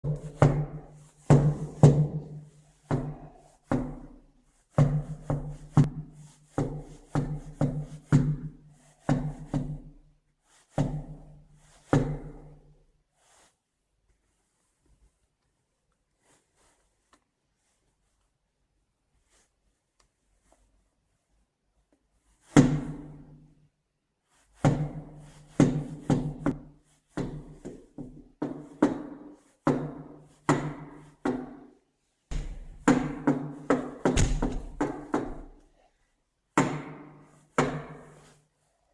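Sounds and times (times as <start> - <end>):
heavy knocking on a door: 0.1 - 4.1, 32.3 - 35.5.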